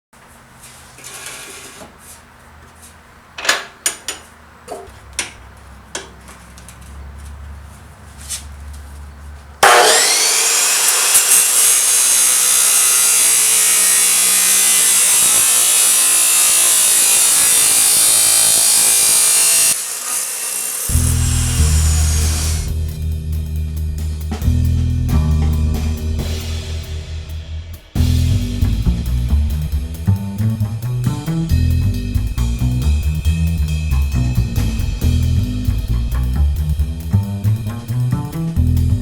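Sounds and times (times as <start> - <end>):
power tool grinding steel: 9.6 - 22.8.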